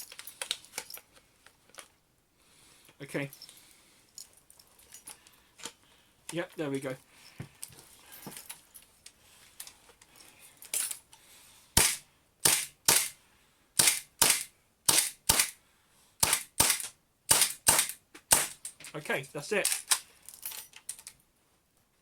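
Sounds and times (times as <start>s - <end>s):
airsoft pistol shots: 11.8s - 13.2s, 13.8s - 15.6s, 16.2s - 18.6s.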